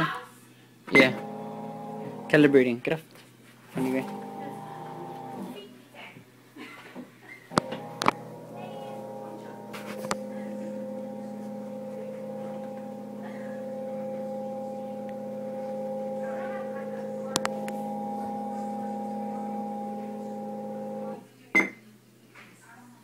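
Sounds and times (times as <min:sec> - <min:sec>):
treadmill motor humming: 0:00.9 - 0:02.9, 0:03.7 - 0:05.7, 0:07.5 - 0:21.2.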